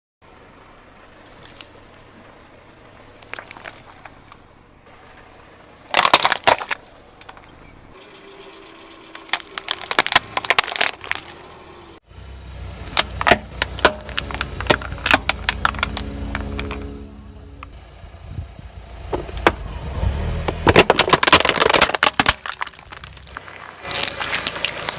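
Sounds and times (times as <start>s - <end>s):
low car engine rumble: 0.2s - 24.9s
tyre crushing hard objects: 5.9s - 6.8s, 9.2s - 11.4s, 12.9s - 17.0s, 19.1s - 24.9s.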